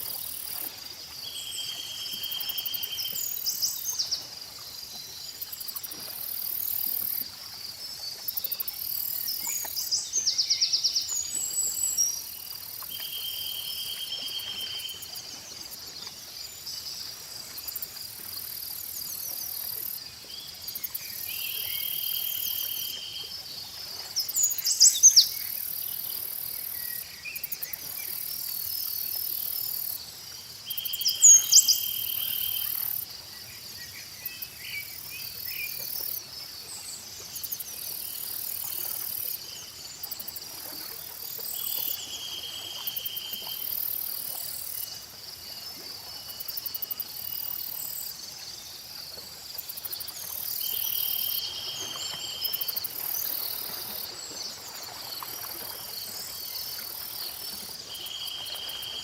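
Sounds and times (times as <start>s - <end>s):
insects and crickets chirping: 0.0s - 59.0s.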